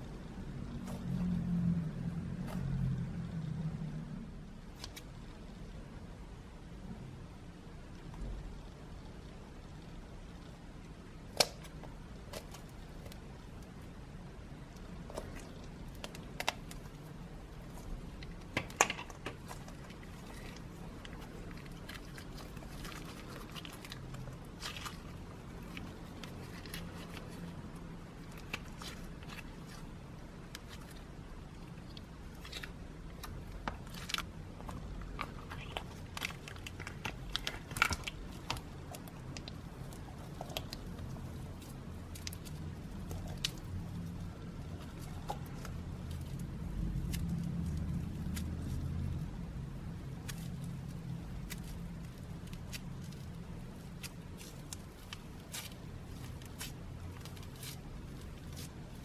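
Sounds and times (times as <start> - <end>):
steady low hum: 0.0 - 59.0
slime squishing with clicks and pops: 10.5 - 59.0.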